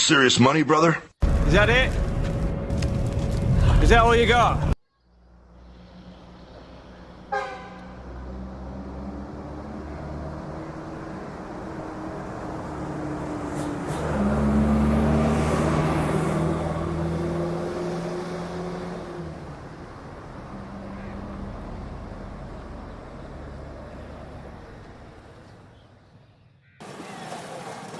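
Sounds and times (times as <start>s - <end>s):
vehicle engine drone: 1.2s - 26.0s
horn toot: 7.3s - 8.0s.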